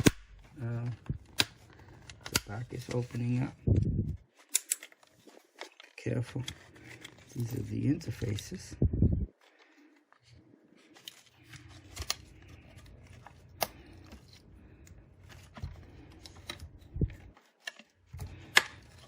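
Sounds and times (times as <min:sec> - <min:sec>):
plastic case clips snapping: 0:04.4 - 0:05.0.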